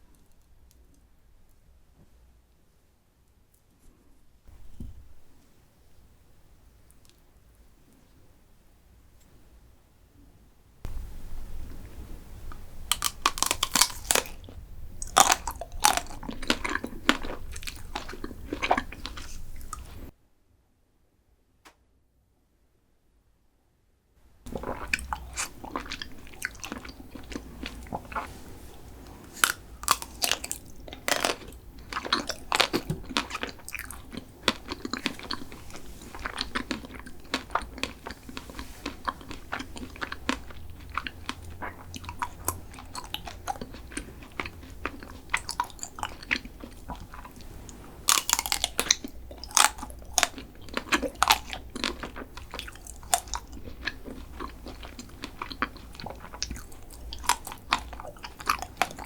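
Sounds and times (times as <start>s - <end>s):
person chewing crunchy food: 10.9s - 20.1s, 24.5s - 59.0s.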